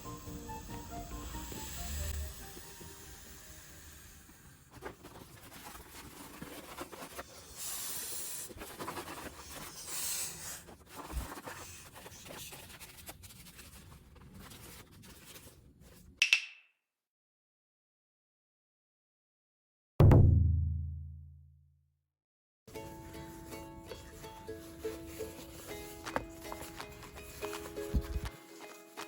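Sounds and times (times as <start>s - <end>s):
rubbing and scratching handling noise: 4.7s - 16.2s, 23.1s - 29.0s.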